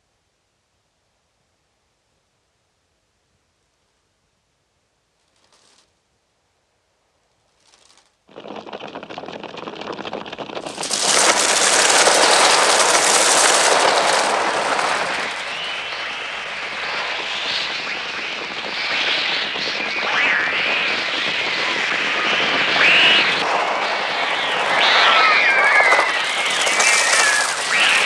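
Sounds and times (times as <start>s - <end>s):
crows' wings beating: 5.2s - 6.0s, 7.5s - 28.0s
high shrieking cries: 24.7s - 28.0s.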